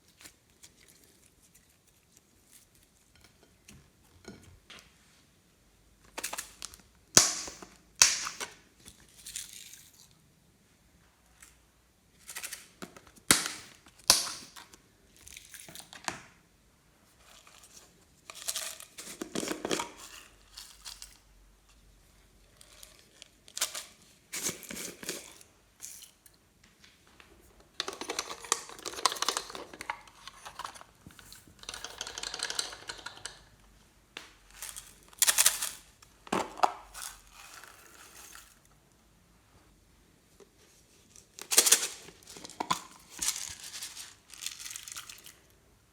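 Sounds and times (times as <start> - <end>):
hands crinkling and tearing materials: 0.0 - 3.2, 41.0 - 45.6.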